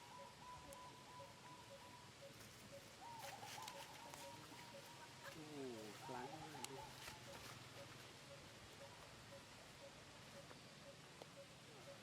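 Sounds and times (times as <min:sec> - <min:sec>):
distant bird calls: 0:00.0 - 0:05.2.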